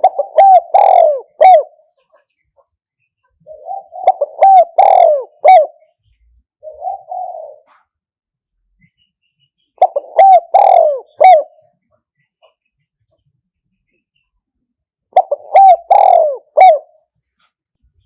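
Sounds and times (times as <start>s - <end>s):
dove cooing: 0.0s - 2.2s, 3.4s - 6.0s, 6.6s - 7.9s, 9.8s - 11.7s, 15.1s - 17.1s.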